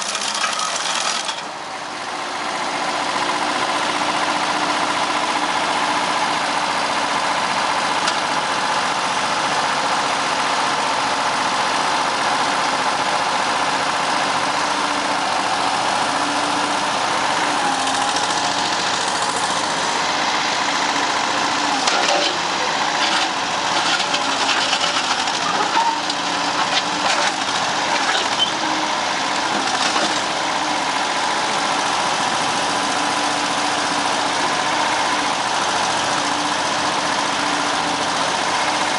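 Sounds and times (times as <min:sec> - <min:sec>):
heavy machine engine running: 0:00.0 - 0:38.9.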